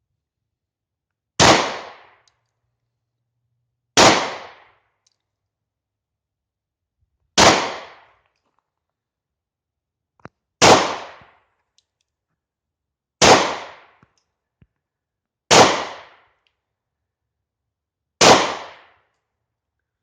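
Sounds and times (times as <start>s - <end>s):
pistol shots with echo: 1.4s - 2.2s, 4.0s - 4.8s, 7.4s - 8.2s, 10.6s - 11.3s, 13.2s - 14.0s, 15.5s - 16.2s, 18.2s - 19.0s.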